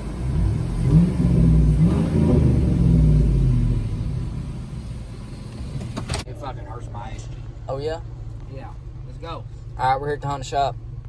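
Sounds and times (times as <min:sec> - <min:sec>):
vehicle engine accelerating: 0:00.0 - 0:06.0.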